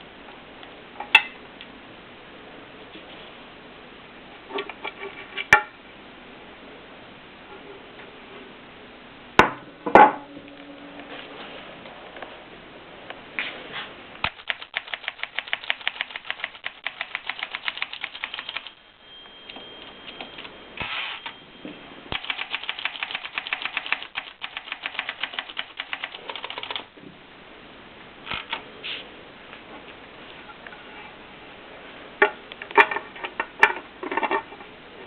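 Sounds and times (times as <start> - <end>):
typewriter keystrokes: 14.2 - 18.8, 22.1 - 26.9.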